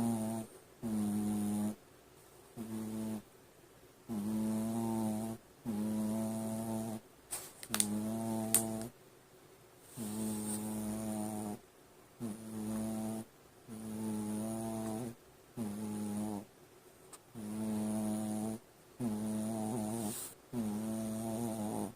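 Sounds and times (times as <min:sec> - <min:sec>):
dog snoring: 0:00.0 - 0:01.8, 0:02.6 - 0:03.3, 0:04.1 - 0:07.0, 0:07.8 - 0:08.9, 0:09.9 - 0:11.6, 0:12.2 - 0:16.5, 0:17.3 - 0:21.9.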